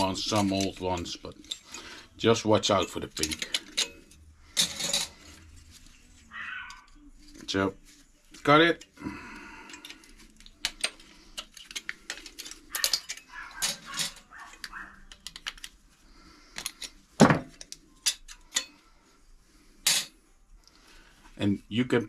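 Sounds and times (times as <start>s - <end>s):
small metal parts clinking: 0.0s - 5.4s, 9.6s - 15.7s.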